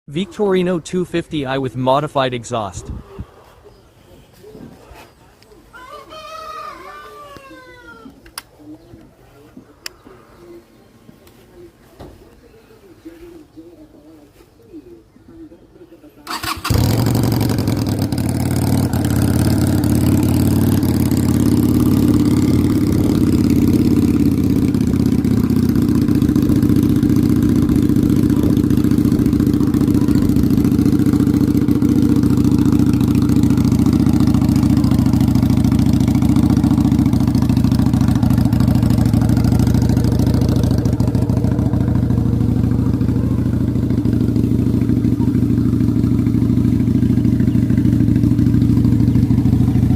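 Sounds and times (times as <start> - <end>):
motorcycle engine idling: 16.3 - 49.9.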